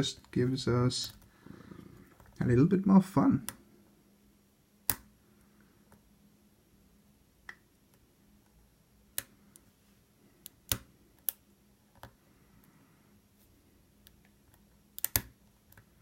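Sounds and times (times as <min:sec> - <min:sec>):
lock pick metallic clicks: 0:15.0 - 0:15.3.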